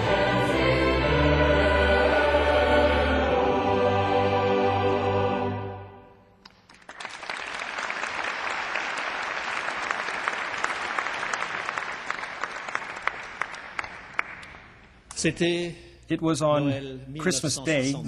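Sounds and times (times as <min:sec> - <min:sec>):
choir and strings chord: 0:00.0 - 0:06.3
audience applause: 0:06.7 - 0:14.5.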